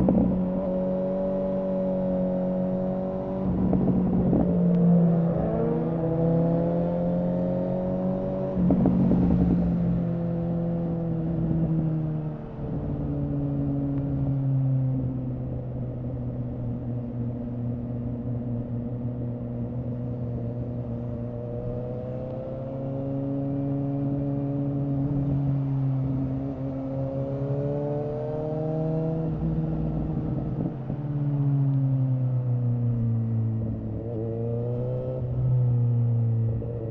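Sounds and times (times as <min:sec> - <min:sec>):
motorcycle engine revving: 0:00.0 - 0:11.7, 0:19.6 - 0:30.8.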